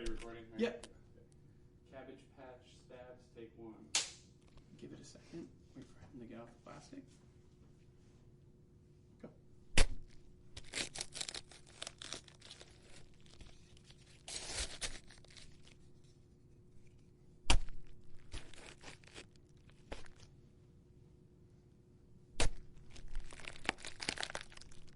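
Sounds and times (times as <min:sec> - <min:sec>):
cabbage leaves crunching and tearing: 0:10.6 - 0:15.8, 0:17.5 - 0:20.3, 0:22.4 - 0:24.9
cabbage stabbed with thuds: 0:17.5 - 0:17.8, 0:22.4 - 0:22.6.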